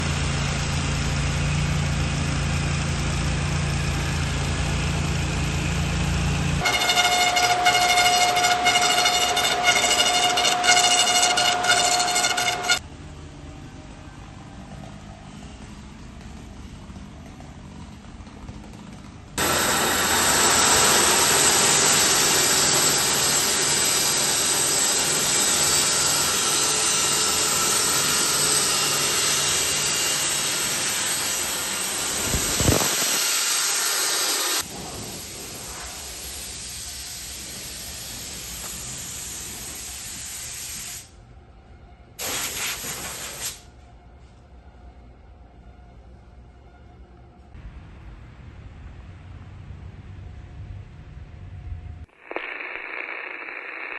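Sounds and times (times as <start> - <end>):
woodworking machinery running: 0.0 - 12.8, 17.6 - 34.7.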